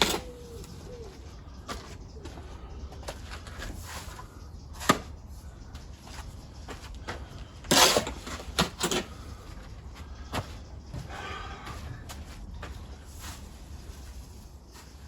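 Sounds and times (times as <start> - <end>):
scraping clatter: 7.6 - 9.2.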